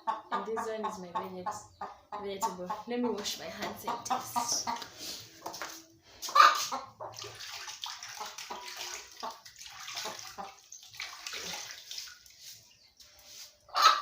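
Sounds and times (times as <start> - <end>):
hands washing in water: 5.5 - 13.6.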